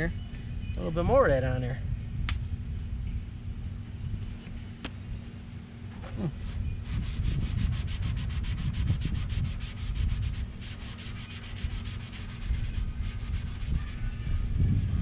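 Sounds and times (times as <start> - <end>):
polishing pad scrubbing metal: 6.9 - 14.0.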